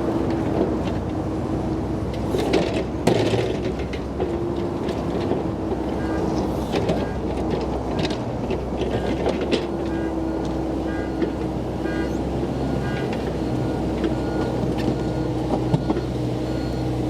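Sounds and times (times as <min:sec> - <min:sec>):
excavator diesel engine running: 0:00.0 - 0:17.0
hydraulic whine: 0:09.8 - 0:17.0.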